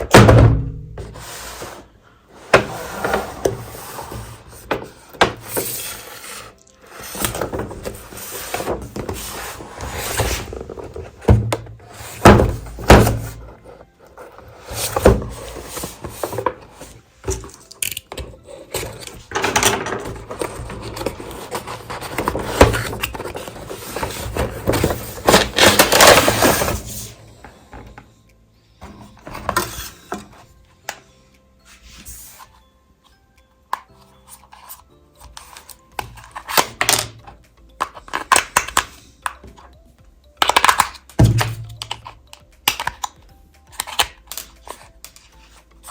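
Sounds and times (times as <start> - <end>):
knocks and scraping from handling toy: 1.0 - 28.1.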